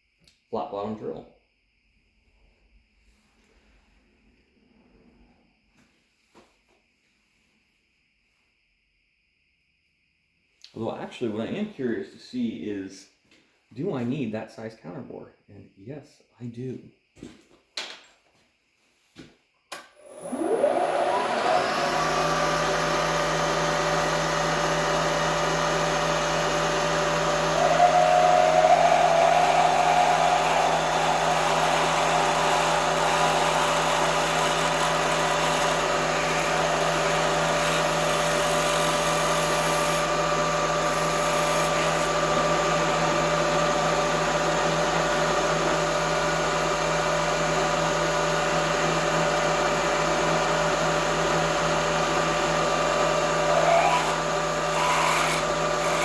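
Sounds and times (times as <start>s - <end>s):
milling machine spindle whine: 20.0s - 56.0s.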